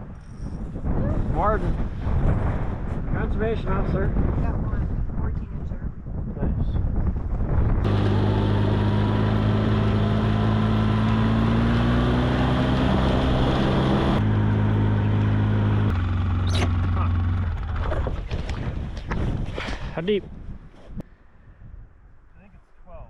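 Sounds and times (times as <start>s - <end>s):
ice auger motor: 7.9s - 17.7s.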